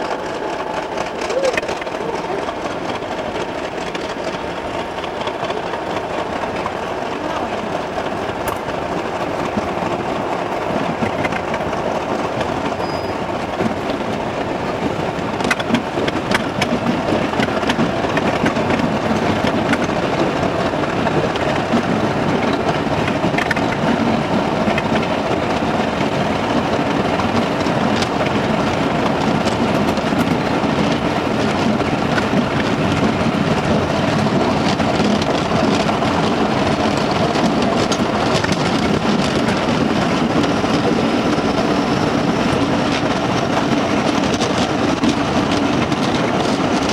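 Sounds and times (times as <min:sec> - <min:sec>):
sharp clicks of track: 0:00.0 - 0:46.9
train rumbling along track: 0:00.0 - 0:46.9.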